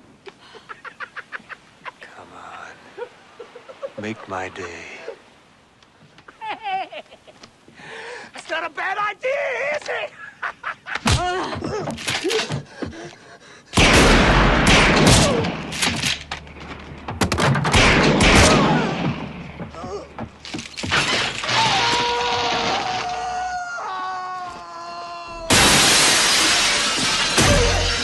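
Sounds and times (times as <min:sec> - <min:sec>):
loud crashing and shattering: 0:25.5 - 0:28.0.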